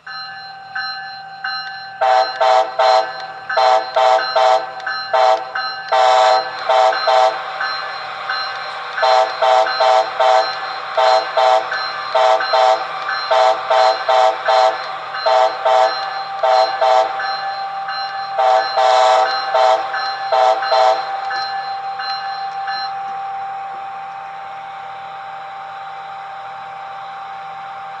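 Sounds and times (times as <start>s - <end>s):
steady tone: 0.0s - 26.0s
horn toots: 2.0s - 7.4s, 9.0s - 17.4s, 18.4s - 21.1s.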